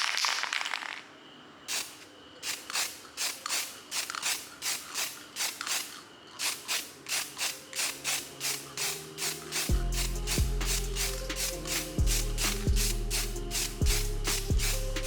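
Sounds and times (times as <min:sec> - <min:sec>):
music: 0:07.1 - 0:15.0.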